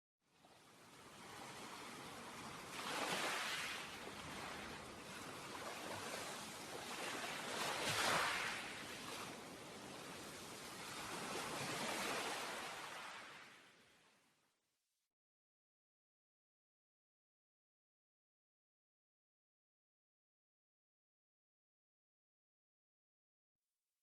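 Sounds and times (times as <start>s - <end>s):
ocean waves washing in: 0.3s - 14.1s.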